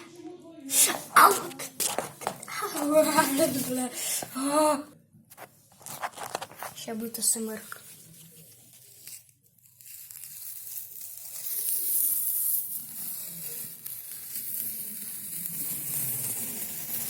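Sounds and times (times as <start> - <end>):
wallpaper ripping off a wall: 8.9 - 17.0.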